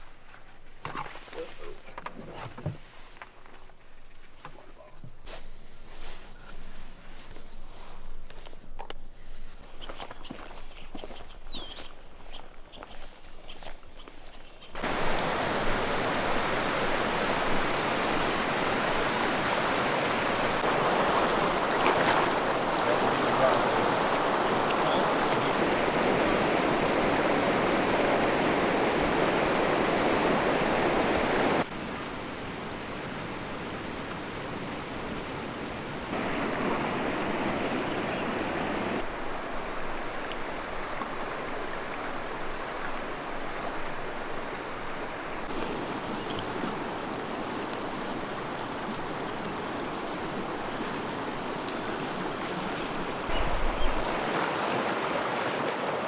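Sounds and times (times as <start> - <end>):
rushing water: 9.6 - 56.0.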